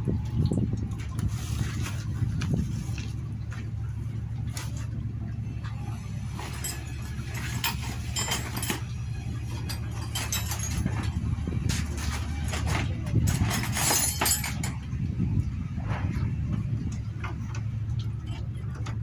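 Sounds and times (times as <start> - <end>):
steady low hum: 0.0 - 19.0
metal tools clinking: 6.3 - 14.9.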